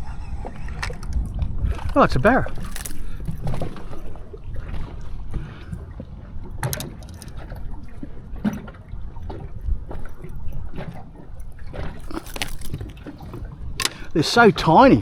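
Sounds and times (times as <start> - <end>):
water around a boat: 0.0 - 15.0
wind: 0.0 - 15.0
knocks and clatters: 6.6 - 7.5, 11.9 - 12.9.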